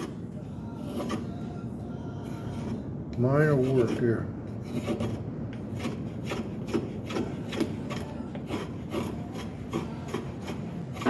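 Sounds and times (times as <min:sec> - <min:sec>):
draw knife scraping wood: 0:00.8 - 0:01.3, 0:04.6 - 0:11.0.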